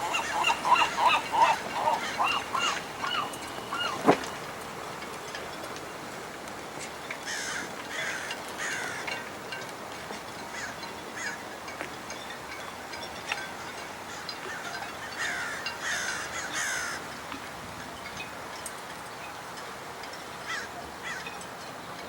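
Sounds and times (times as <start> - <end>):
harsh high bird calls: 0.0 - 4.1
birds honking: 0.0 - 4.5, 7.2 - 9.3, 14.1 - 17.1.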